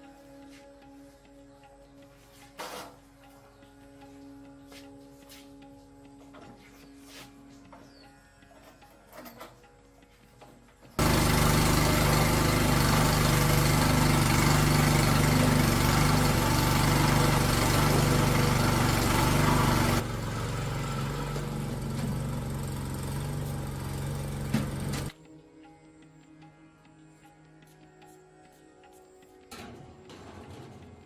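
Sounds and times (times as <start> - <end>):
small gasoline engine running: 11.0 - 25.2.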